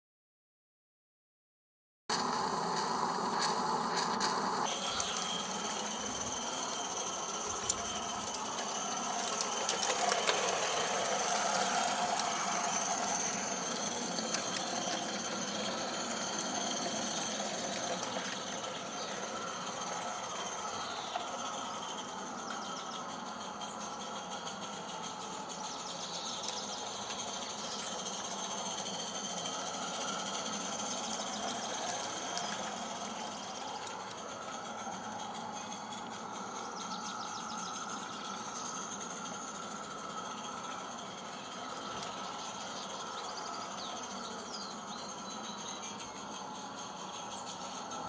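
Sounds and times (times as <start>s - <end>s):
light mechanical clatter: 2.1s - 48.0s
steam locomotive hissing: 2.1s - 48.0s.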